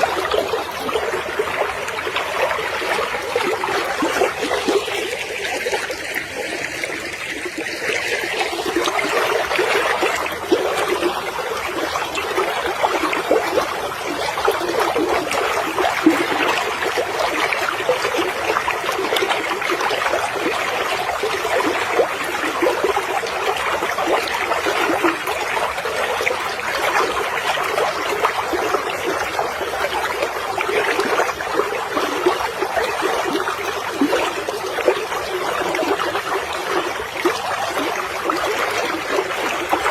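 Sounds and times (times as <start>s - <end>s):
stream trickling: 0.0s - 39.9s.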